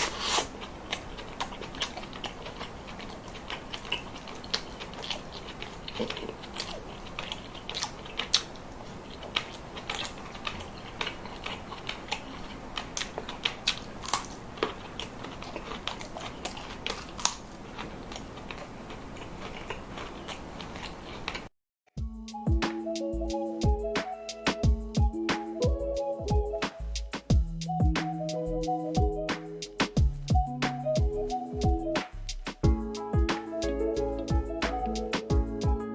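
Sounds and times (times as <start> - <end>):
chewing crunchy food: 0.0 - 21.5
music: 22.0 - 35.9.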